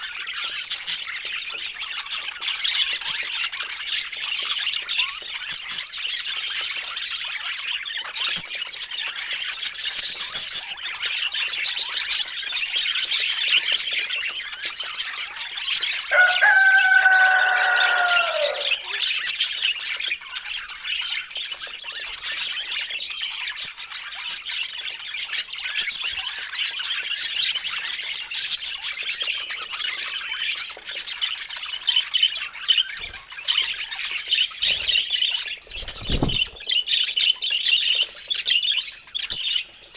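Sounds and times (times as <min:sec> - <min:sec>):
budgerigar long falling call: 0:16.1 - 0:19.0.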